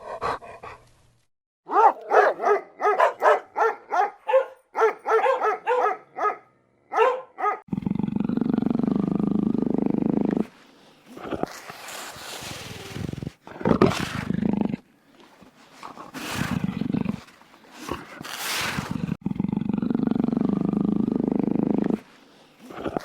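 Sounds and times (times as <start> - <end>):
wild cat growling roars: 7.7 - 10.5, 11.1 - 14.9, 15.9 - 23.0.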